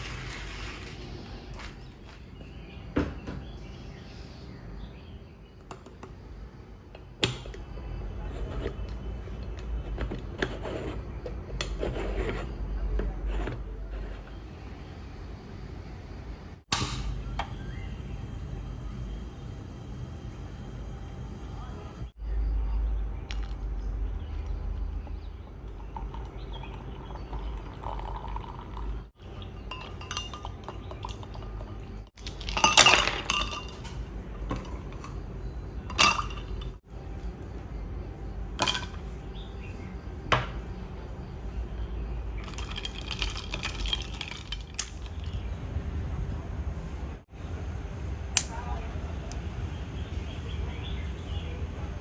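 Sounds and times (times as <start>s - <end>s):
glassware and dishes clinking: 26.0s - 35.2s, 35.9s - 36.8s, 38.6s - 39.0s
steady low rumble: 33.3s - 52.0s.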